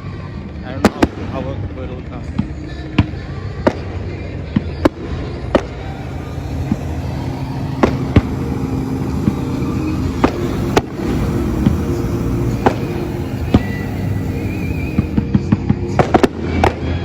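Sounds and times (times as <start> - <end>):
steady low hum: 5.4 - 15.4
fireworks bangs: 5.6 - 15.2.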